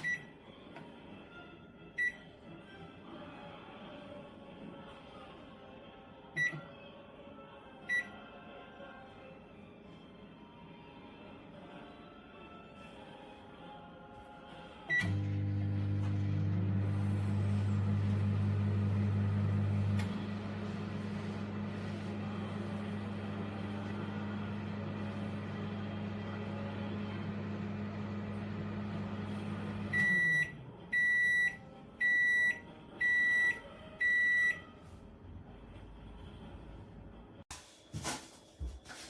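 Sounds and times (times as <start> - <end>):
microwave oven hum: 14.8 - 37.4
microwave high beeps: 14.9 - 20.4, 27.6 - 34.7
microwave click: 17.7 - 20.5.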